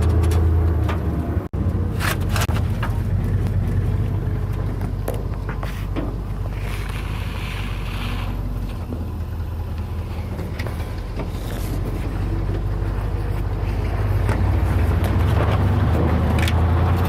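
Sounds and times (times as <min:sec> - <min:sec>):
truck engine rumbling: 0:00.0 - 0:17.0.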